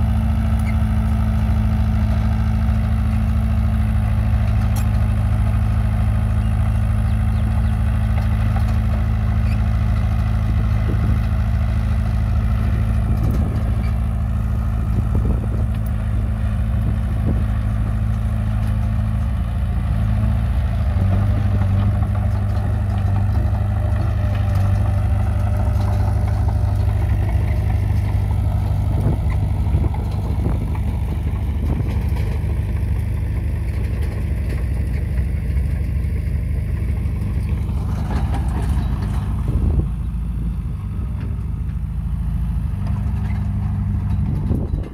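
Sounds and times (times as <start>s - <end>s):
bulldozer diesel engine running: 0.0s - 44.9s.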